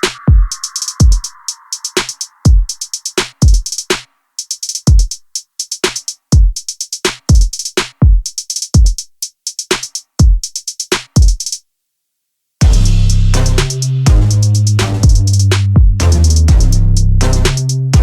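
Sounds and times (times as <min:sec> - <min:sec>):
drum machine beat: 0:00.0 - 0:11.6, 0:12.6 - 0:18.0
music with bass and chords: 0:12.6 - 0:18.0.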